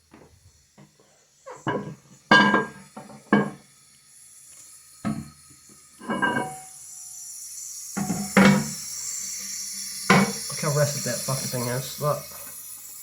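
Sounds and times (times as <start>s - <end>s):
steady hiss: 0.0s - 13.0s
ceramic lid clinking: 1.7s - 2.8s, 6.0s - 6.6s.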